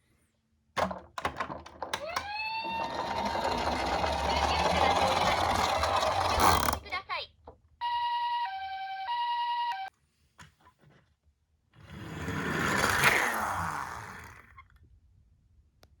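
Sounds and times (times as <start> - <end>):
two-tone ambulance siren: 2.1 - 3.4, 7.8 - 9.9.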